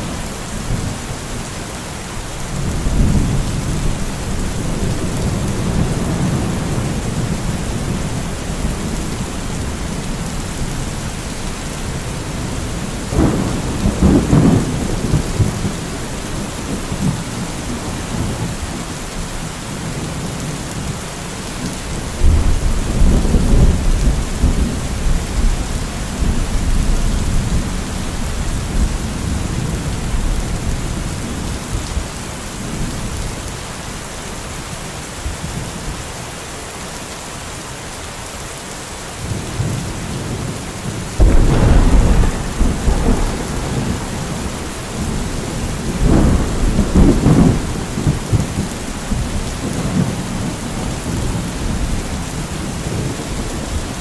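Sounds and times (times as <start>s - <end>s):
heavy rain: 0.0s - 54.0s
thunder rumble: 2.5s - 11.2s, 12.2s - 18.5s, 39.2s - 54.0s.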